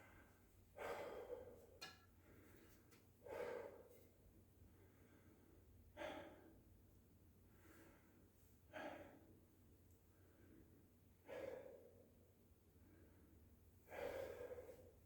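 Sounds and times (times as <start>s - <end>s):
man breathing hard: 0.0s - 2.6s, 3.2s - 4.0s, 4.8s - 6.6s, 7.5s - 9.4s, 10.2s - 12.1s, 12.8s - 15.0s.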